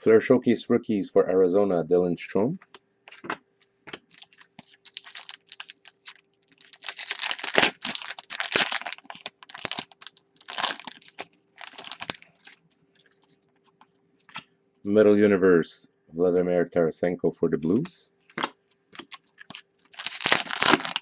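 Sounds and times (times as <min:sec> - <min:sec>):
papery rustling of cards: 0:03.1 - 0:14.4, 0:17.8 - 0:21.0.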